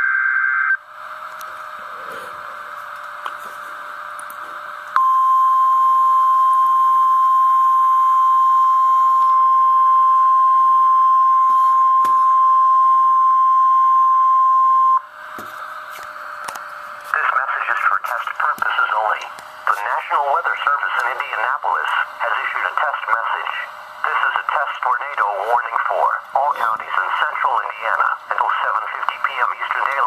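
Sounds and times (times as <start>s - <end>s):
loud single-pitch alarm tone: 5.0s - 15.2s
radio hiss: 17.0s - 30.0s.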